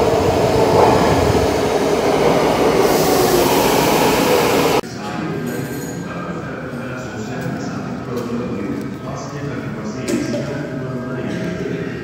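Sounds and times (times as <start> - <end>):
train wheels rumbling: 0.0 - 4.8.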